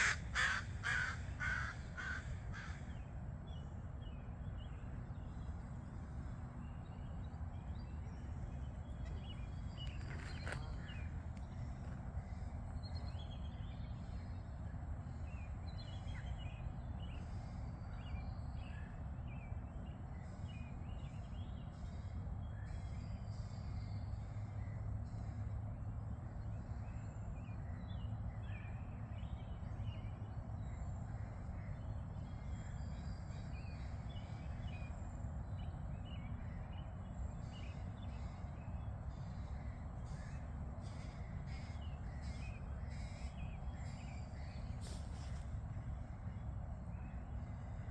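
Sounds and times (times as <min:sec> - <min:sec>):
many birds calling: 0:00.0 - 0:03.2, 0:37.6 - 0:46.2
steady low rumble: 0:00.0 - 0:27.1.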